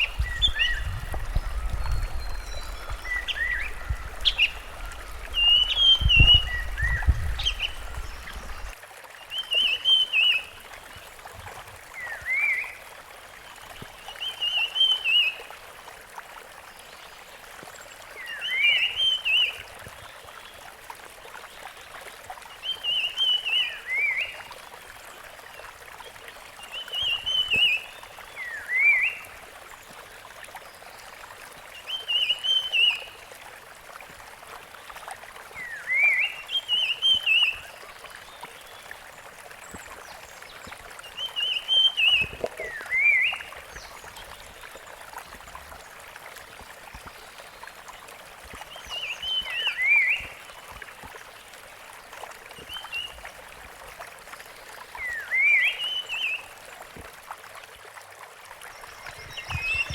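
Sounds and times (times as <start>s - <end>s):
bird calling: 0.0s - 8.7s
steady background hiss: 0.0s - 8.7s.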